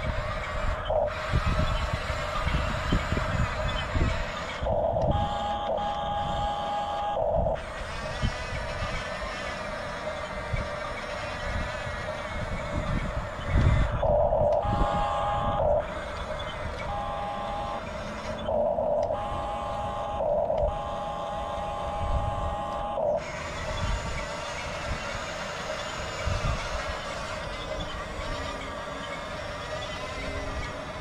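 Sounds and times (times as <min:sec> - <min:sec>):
electric track drive rumble: 0:00.0 - 0:31.0
toy electronic beeping tones: 0:01.0 - 0:08.2, 0:12.2 - 0:24.9.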